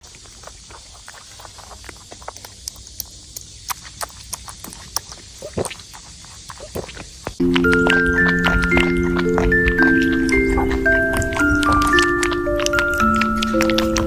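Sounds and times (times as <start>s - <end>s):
rabbit chewing: 0.0s - 14.0s.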